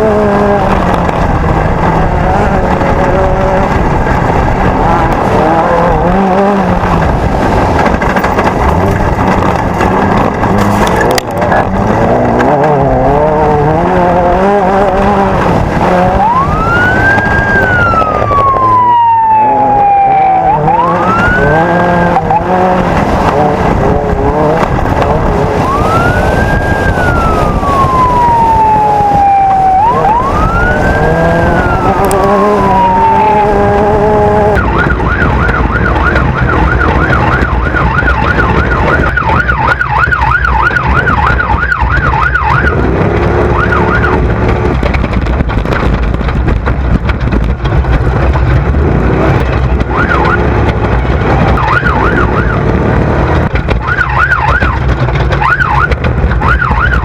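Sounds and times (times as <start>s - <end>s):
engine rumble: 0.0s - 57.0s
electronic siren wailing and yelping: 13.0s - 44.4s, 49.8s - 50.6s, 51.3s - 57.0s.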